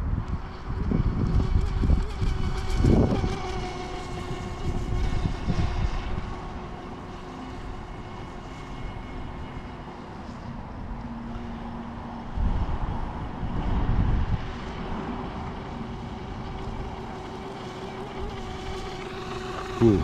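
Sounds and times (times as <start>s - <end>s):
wind buffeting microphone: 0.0s - 9.7s, 11.6s - 20.0s
electric motor whining: 15.7s - 20.0s.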